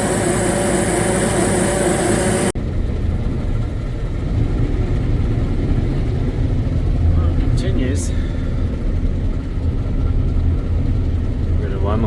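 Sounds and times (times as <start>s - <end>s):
steady whines and high hiss: 0.0s - 2.6s
diesel farm machinery running: 0.0s - 12.0s.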